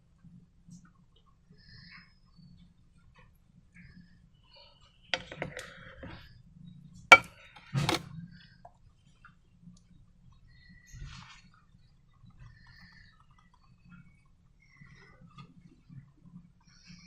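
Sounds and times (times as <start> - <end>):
objects clicking on hard surface: 5.2 - 6.1, 7.1 - 8.0.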